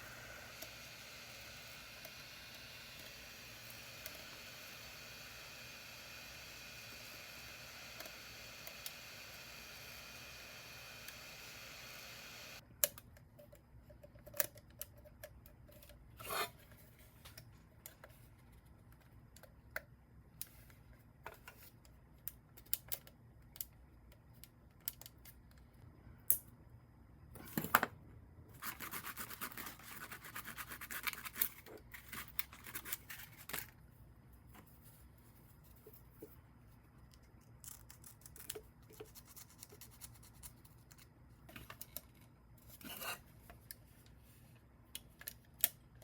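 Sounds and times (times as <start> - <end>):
steady hiss: 0.0 - 12.6.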